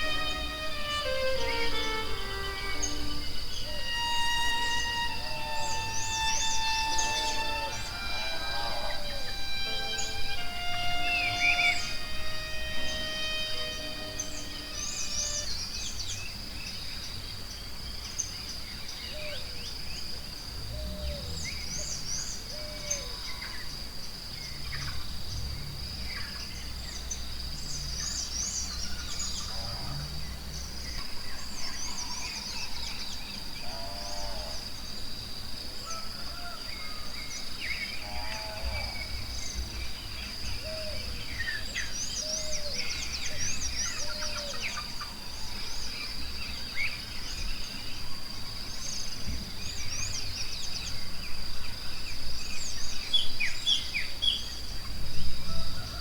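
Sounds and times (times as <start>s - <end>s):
low sounds: 0.0s - 15.6s
high-pitched insect drone: 0.0s - 16.1s
birds chirping and trilling: 0.0s - 17.2s, 35.9s - 51.1s.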